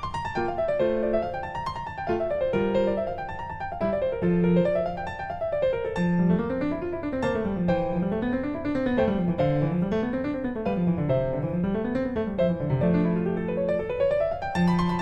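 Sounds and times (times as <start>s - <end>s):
piano music with quick notes: 0.0s - 15.0s.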